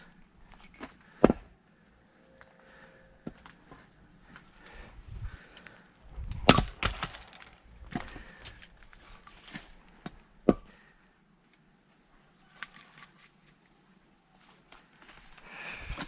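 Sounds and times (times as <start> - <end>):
wood cracking apart from strike: 6.3 - 7.6.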